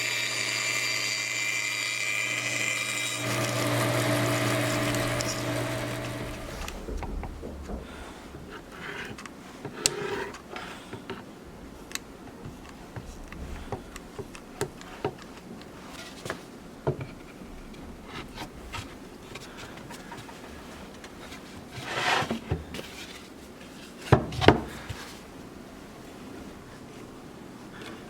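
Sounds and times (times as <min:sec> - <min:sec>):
loud knocks: 0:04.6 - 0:08.8
scraping rub on wood: 0:04.6 - 0:10.4, 0:21.3 - 0:23.1.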